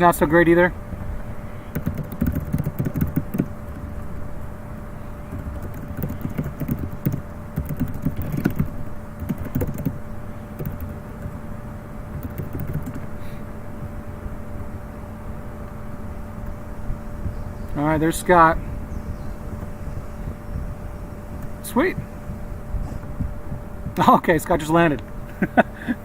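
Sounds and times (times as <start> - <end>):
electrical hum: 0.0 - 26.0
low rumble: 0.0 - 26.0
equipment clicks and knocks: 1.7 - 4.0, 5.3 - 10.0.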